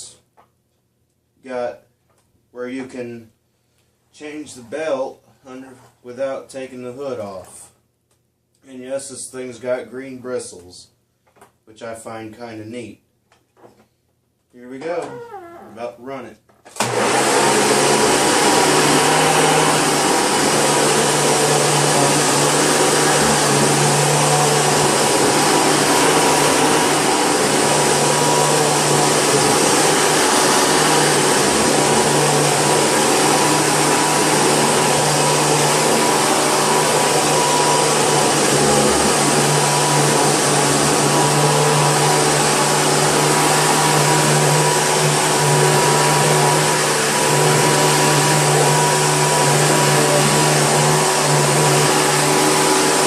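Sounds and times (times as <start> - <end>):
vacuum cleaner running: 16.8 - 53.0.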